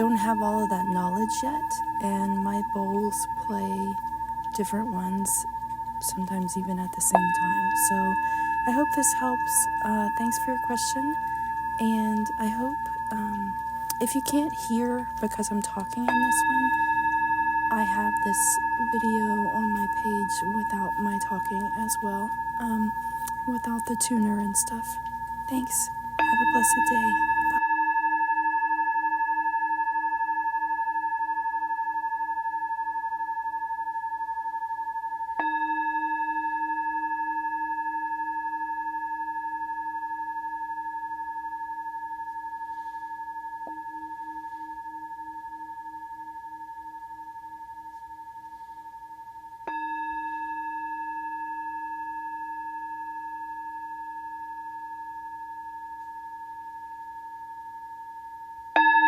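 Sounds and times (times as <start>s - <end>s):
low pulsing hum: 0.0s - 27.6s
singing bowl ringing: 0.0s - 59.0s.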